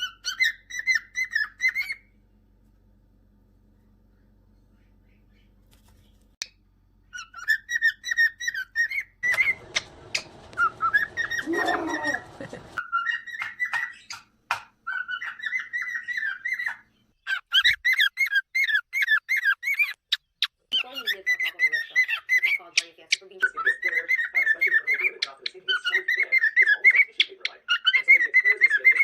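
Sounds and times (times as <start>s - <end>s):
cockatiel whistling and chirping: 0.0s - 2.1s, 7.1s - 29.0s.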